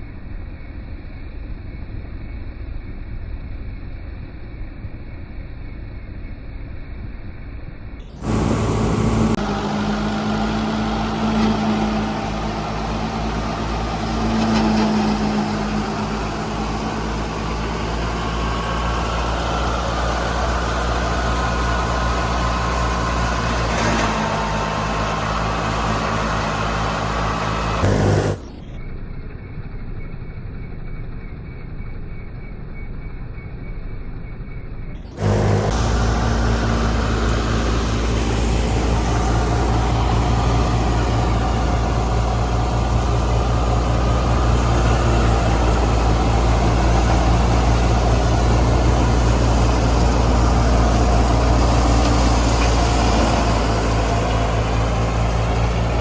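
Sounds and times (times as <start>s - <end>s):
combine harvester running: 8.0s - 28.8s, 35.1s - 56.0s.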